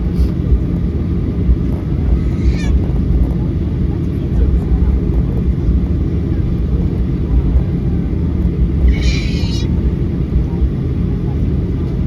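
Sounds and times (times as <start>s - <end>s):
airplane cabin rumble: 0.0s - 12.0s.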